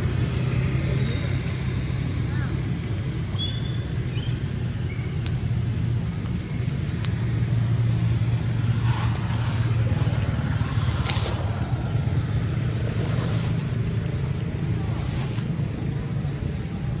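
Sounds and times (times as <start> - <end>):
low engine drone: 0.0 - 17.0
faint clicks: 5.2 - 7.7.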